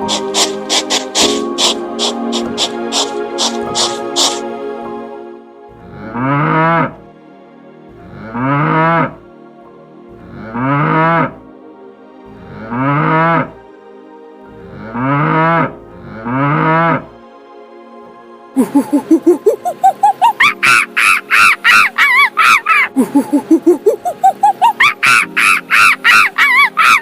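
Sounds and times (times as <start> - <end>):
soft background music: 0.0 - 27.0
cattle mooing: 5.8 - 7.0, 7.9 - 9.2, 10.2 - 11.4, 12.3 - 13.6, 14.5 - 17.2.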